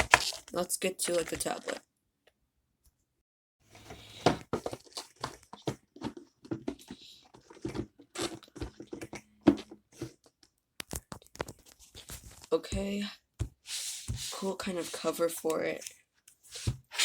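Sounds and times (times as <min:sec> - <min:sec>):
packaging knocks taps and rustles: 0:04.3 - 0:12.5.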